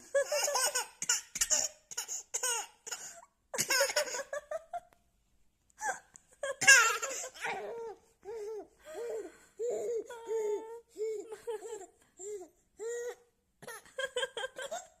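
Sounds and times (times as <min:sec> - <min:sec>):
baby laughing and giggling: 0:00.1 - 0:04.6, 0:06.4 - 0:08.6, 0:13.6 - 0:15.0.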